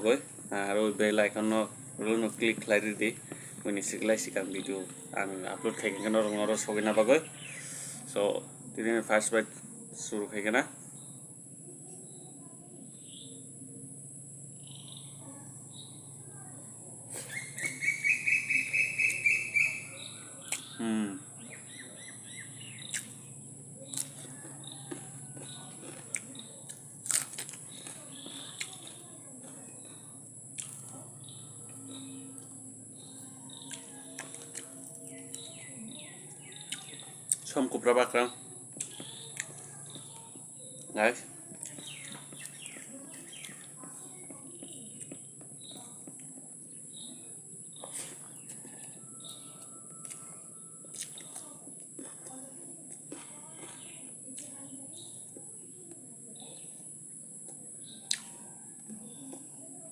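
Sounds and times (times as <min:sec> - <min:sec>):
birds chirping: 0:00.0 - 0:59.9
crickets trilling: 0:00.0 - 0:59.9
eating clicks and smacks: 0:20.4 - 0:20.8, 0:22.8 - 0:23.2, 0:23.9 - 0:31.0, 0:33.6 - 0:35.6, 0:38.7 - 0:40.9, 0:47.8 - 0:50.2, 0:50.9 - 0:52.3, 0:57.4 - 0:59.5.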